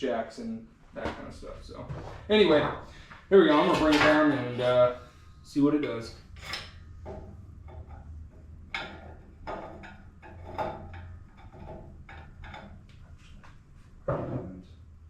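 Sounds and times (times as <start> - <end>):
steady low hum: 0.0 - 15.0
metal clanks of car parts: 1.9 - 5.0, 5.8 - 14.5.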